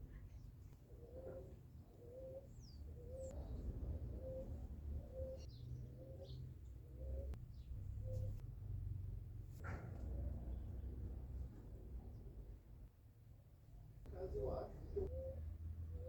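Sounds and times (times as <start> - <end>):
small birds chirping: 0.0 - 8.5
dove cooing: 0.9 - 7.4, 14.4 - 16.0.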